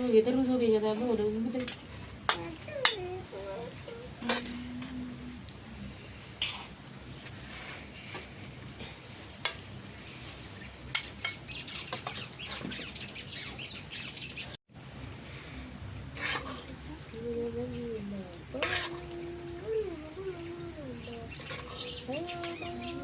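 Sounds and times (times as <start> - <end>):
birds chirping: 8.0 - 14.6, 19.5 - 23.0.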